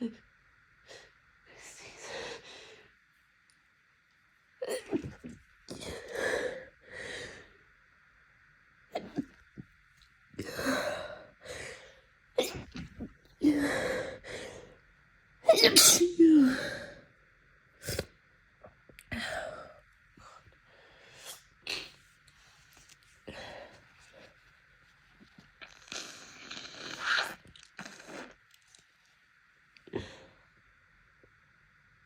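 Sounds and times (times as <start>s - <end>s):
person sneezing: 15.5s - 16.5s.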